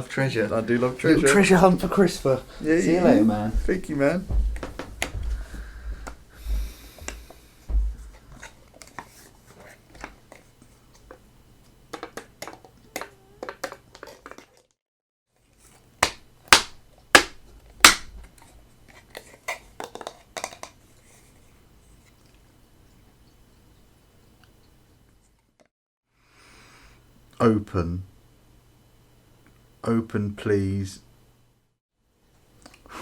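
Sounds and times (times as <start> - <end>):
sharp loud knocks: 3.5 - 8.2.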